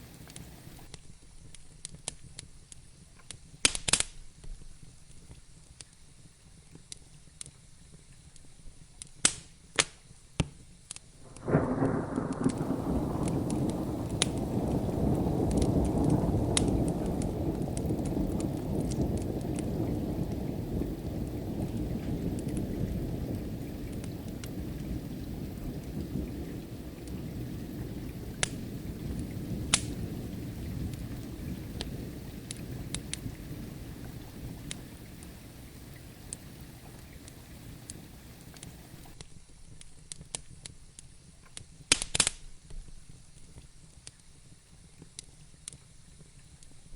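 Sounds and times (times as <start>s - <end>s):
distant thunder rolling: 0.0s - 0.9s, 11.2s - 39.2s
wood fire crackling: 0.0s - 0.9s, 11.2s - 39.2s
steady rain: 0.0s - 1.0s, 11.1s - 39.2s.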